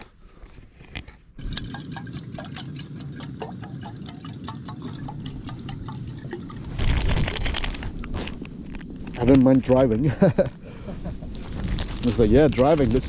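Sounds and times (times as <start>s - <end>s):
water pouring: 1.4s - 7.9s.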